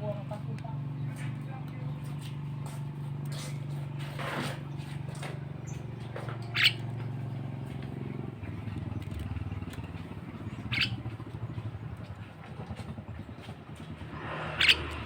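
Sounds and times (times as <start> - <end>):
vehicle engine running: 0.0 - 15.0
myna bird calls: 5.6 - 7.6, 8.3 - 12.0, 14.1 - 15.0.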